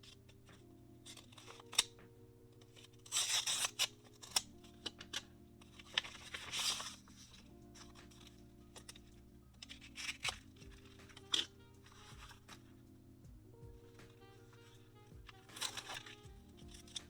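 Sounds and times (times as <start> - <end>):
soft background music: 0.0 - 17.0
packaging rasping open: 2.7 - 12.8, 14.0 - 17.0.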